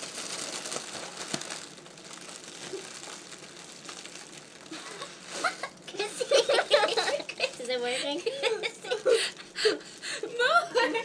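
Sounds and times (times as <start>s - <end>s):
balloon crinkling: 0.0s - 7.9s.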